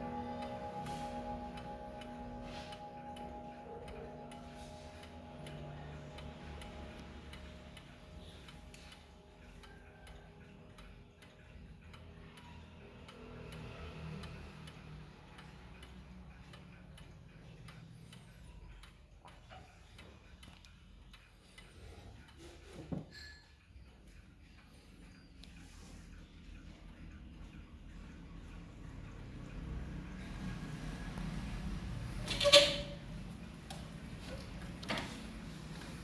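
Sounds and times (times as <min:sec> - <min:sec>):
gong chime ringing: 0:00.0 - 0:08.4
clock ticking: 0:00.0 - 0:36.0.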